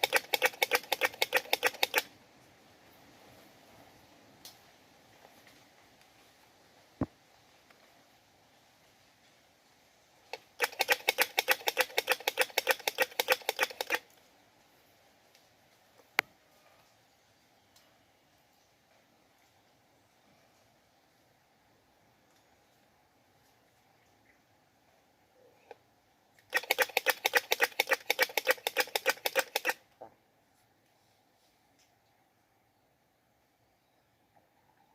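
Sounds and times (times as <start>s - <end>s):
squirrel clicking chucks: 0.0s - 2.1s, 10.3s - 14.2s, 26.4s - 29.8s.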